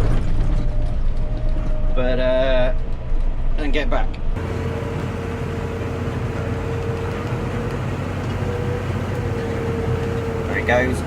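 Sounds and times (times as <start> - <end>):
farm machinery engine drone: 4.4 - 11.0.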